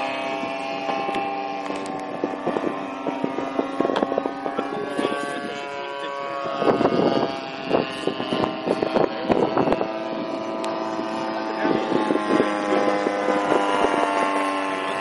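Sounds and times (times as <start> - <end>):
model plane propeller droning: 0.0 - 15.0.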